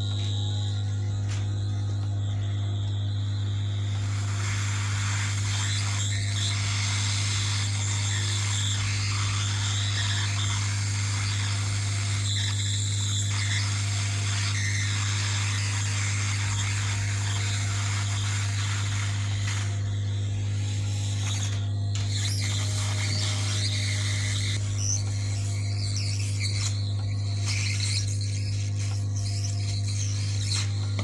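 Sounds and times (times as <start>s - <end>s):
constant low hum: 0.0s - 31.0s
hot air blower hissing: 0.0s - 31.0s.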